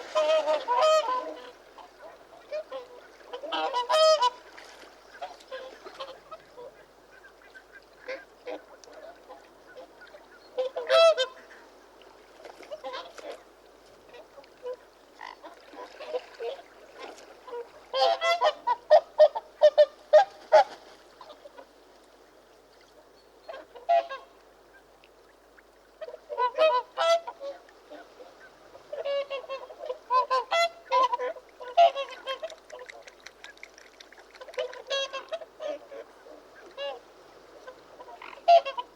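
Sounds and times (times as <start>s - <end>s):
swans calling: 0.0s - 4.6s, 26.0s - 38.9s.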